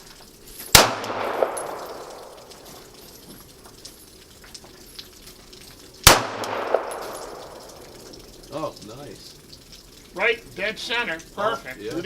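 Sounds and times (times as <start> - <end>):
gunshot with echo: 0.7 - 2.4, 6.0 - 7.6.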